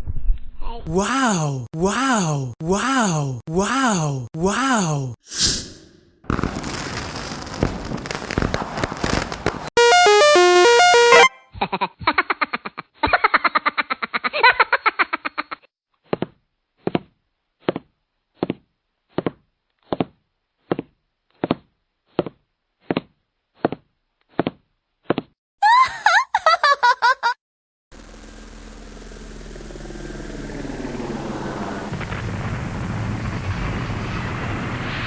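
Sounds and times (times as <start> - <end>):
rapid chopped pitched pulses: 9.8 - 11.4
short pitched blips: 9.8 - 11.4.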